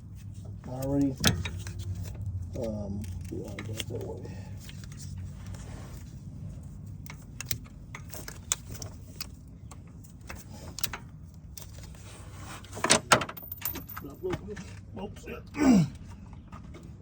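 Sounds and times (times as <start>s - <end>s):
metal clatter: 12.8s - 14.7s.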